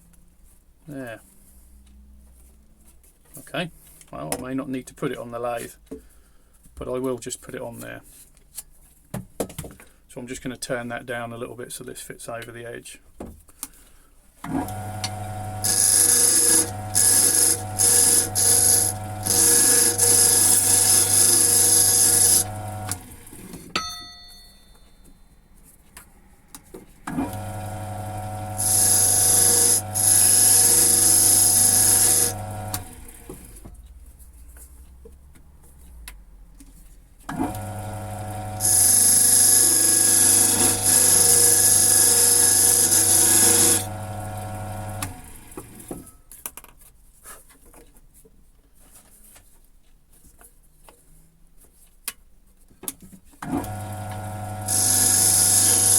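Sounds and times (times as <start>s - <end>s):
lathe running: 14.6s - 23.4s, 27.2s - 33.2s, 37.5s - 45.2s, 53.6s - 55.9s
turning tool scraping plastic: 14.6s - 23.7s, 28.2s - 34.9s, 38.6s - 44.0s, 54.1s - 55.9s.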